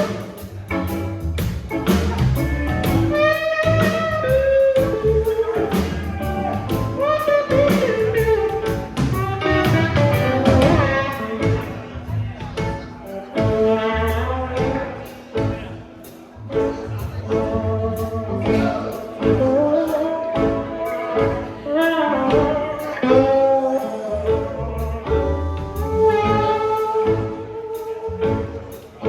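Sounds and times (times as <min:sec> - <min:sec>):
guitar melody with bent notes: 0:00.0 - 0:29.0
live band playing blues rock: 0:00.0 - 0:29.0.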